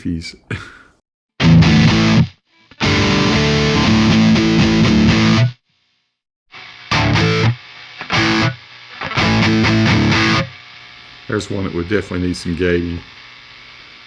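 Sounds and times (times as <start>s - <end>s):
distorted electric guitar: 1.4s - 5.6s, 6.5s - 14.0s
amp hiss and hum: 6.6s - 14.0s.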